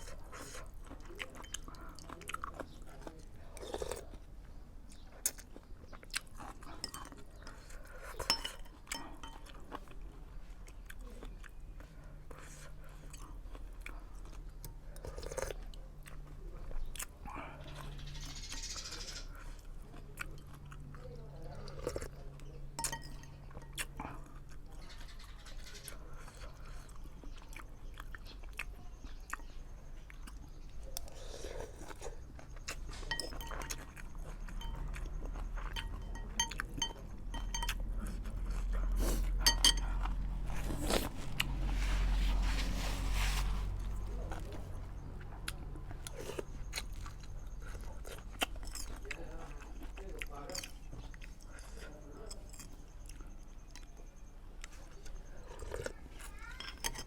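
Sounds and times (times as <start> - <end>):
person chewing: 0.0 - 17.8, 19.3 - 24.8, 25.9 - 57.0
spoon clinking against bowl: 8.2 - 9.5, 22.8 - 23.8, 33.1 - 33.9, 34.6 - 37.9, 39.4 - 40.0.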